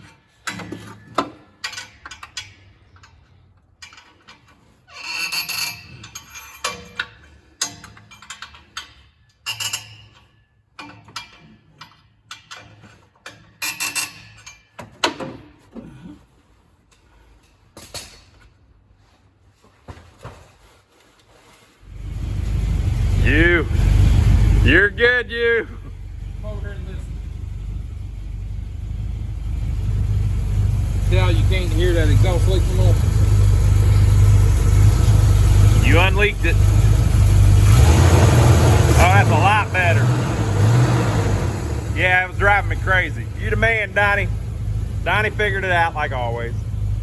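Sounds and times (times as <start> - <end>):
hand tools clinking on metal: 0.0 - 15.2.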